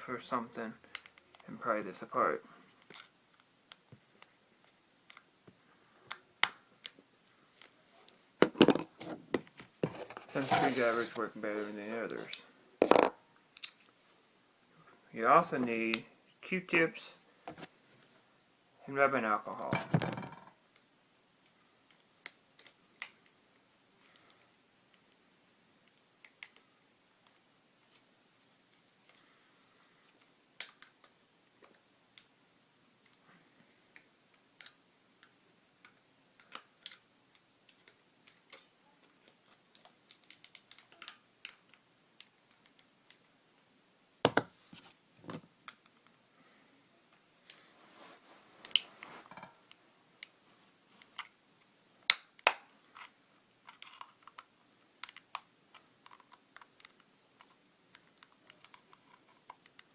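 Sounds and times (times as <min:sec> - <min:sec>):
plastic case clicks and taps: 0:44.3 - 0:44.5.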